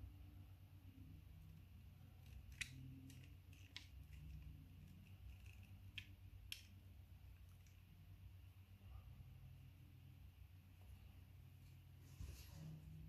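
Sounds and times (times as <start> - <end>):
low steady hum: 0.0 - 13.0
small plastic parts clicking: 2.2 - 6.8.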